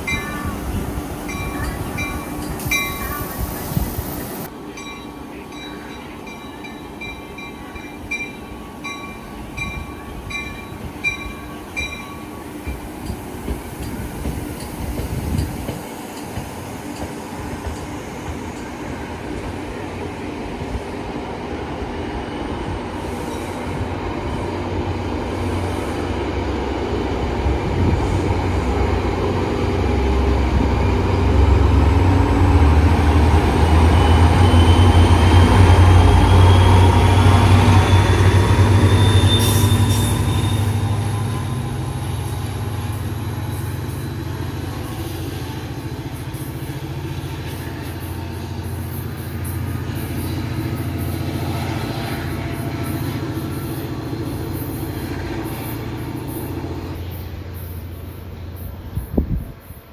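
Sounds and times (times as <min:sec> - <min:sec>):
train rumbling past: 0:00.0 - 0:59.9
thin wheel squeal: 0:34.0 - 0:41.6.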